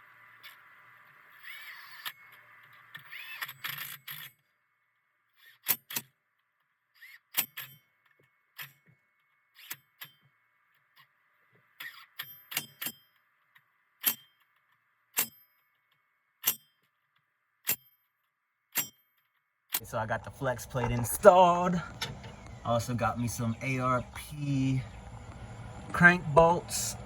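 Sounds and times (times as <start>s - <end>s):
faint steady hum: 19.8s - 27.0s.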